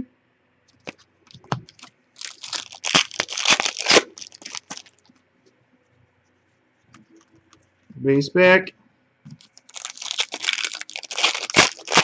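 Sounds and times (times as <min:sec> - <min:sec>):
foil wrapper tearing and crinkling: 0:01.4 - 0:05.0, 0:09.4 - 0:12.0.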